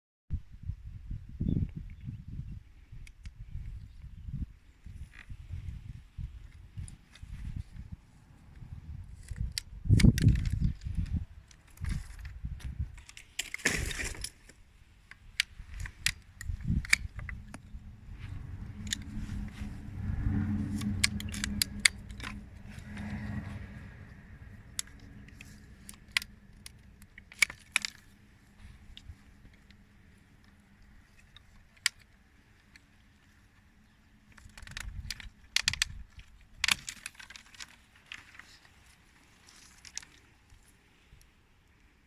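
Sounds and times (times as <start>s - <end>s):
crunching snap: 9.1s - 29.8s, 34.3s - 40.7s
pruning shears clicking: 9.1s - 32.9s, 34.3s - 40.5s.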